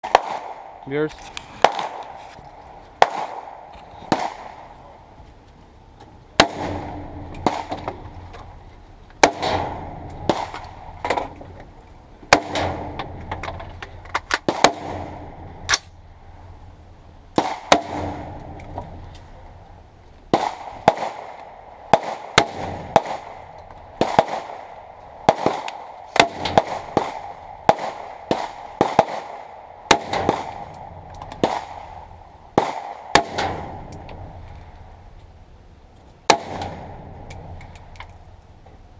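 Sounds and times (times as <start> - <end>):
gunshots: 0.0 - 2.2, 3.0 - 4.8, 6.4 - 8.1, 9.2 - 11.4, 12.3 - 13.6, 14.3 - 15.9, 17.3 - 18.8, 20.3 - 34.0, 36.3 - 37.3.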